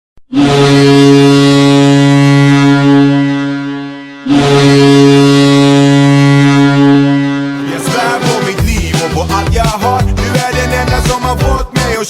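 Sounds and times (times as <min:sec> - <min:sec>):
hockey goal horn blasts: 0:00.3 - 0:08.2.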